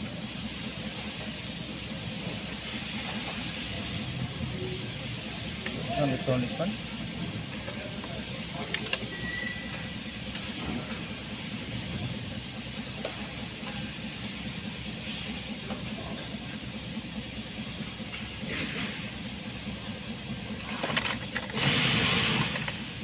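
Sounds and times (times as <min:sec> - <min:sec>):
low rumbling hum: 0:00.0 - 0:23.0
steady hiss: 0:00.0 - 0:23.0
thin high tone: 0:09.0 - 0:09.9.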